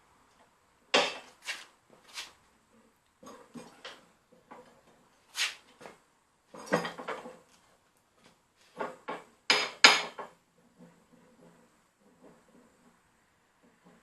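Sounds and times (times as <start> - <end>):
metal clanks and knocks: 8.8 - 13.0.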